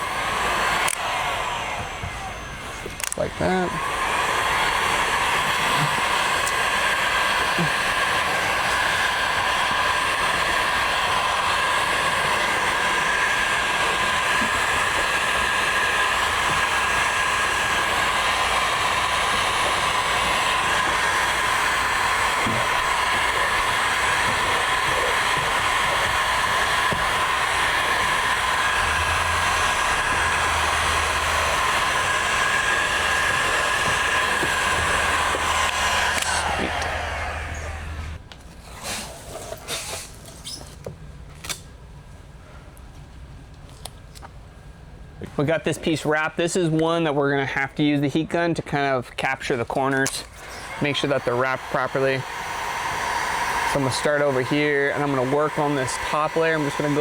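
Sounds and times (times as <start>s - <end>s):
heat gun blowing with whine: 0.0s - 40.6s, 49.2s - 57.0s.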